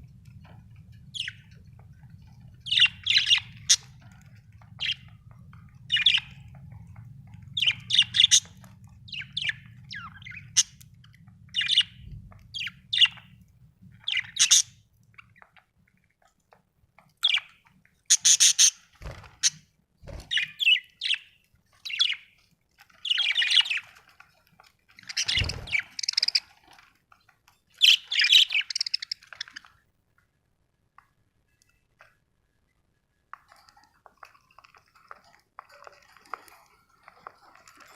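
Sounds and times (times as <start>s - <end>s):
budgerigar chirping and squawking: 2.7s - 3.9s, 7.6s - 10.8s, 14.0s - 14.8s, 18.1s - 19.6s.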